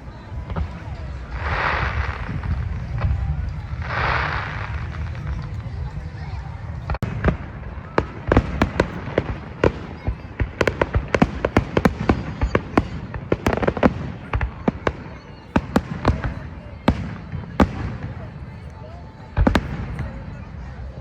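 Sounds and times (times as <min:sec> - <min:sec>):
low rumble: 0:00.0 - 0:07.9
fireworks bangs and crackles: 0:00.0 - 0:21.0.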